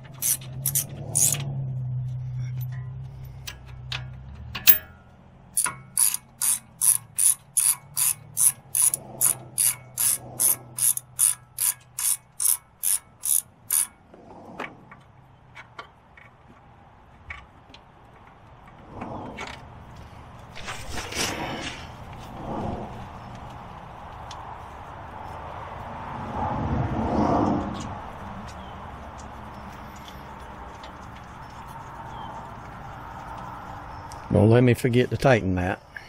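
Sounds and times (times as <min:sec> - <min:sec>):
ratchet wrench cranking: 0:00.0 - 0:01.5, 0:04.5 - 0:14.0.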